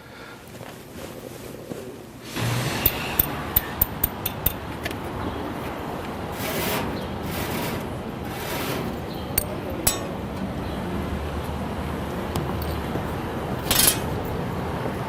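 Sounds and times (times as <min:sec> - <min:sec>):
sharp clicks with ring: 0:02.8 - 0:04.6.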